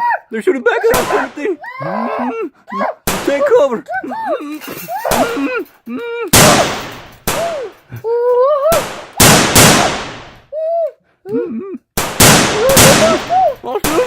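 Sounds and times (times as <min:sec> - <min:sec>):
high-pitched voice cries: 0:00.0 - 0:06.4, 0:07.3 - 0:08.8, 0:10.5 - 0:11.9, 0:12.6 - 0:14.0
gunshot sound effects: 0:06.4 - 0:07.6, 0:08.8 - 0:10.4, 0:12.0 - 0:14.0.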